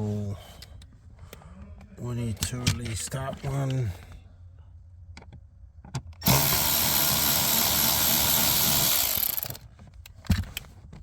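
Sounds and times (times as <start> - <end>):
cordless drill running: 6.2 - 9.6.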